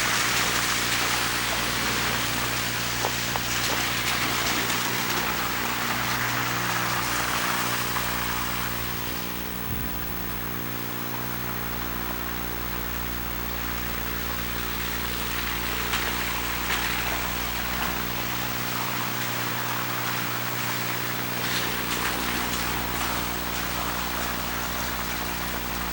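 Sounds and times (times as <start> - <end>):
camcorder electrical buzz: 0.0 - 25.9.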